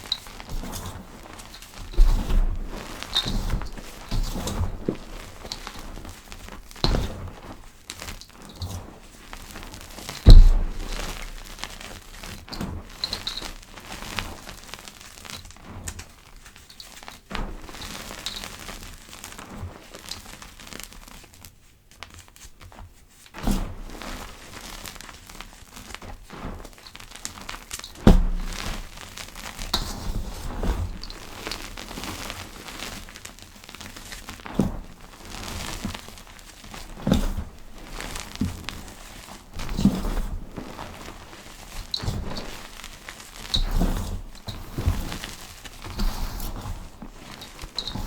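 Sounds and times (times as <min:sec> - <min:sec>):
powder crackling and crunching: 0:00.0 - 0:21.2, 0:23.9 - 0:48.0
dull thumps: 0:01.9 - 0:06.0, 0:10.2 - 0:11.9, 0:28.0 - 0:29.0.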